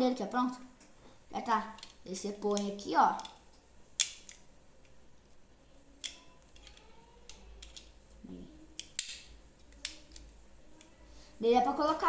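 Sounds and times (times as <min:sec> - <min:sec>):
plastic clicks and taps: 0:06.0 - 0:07.9.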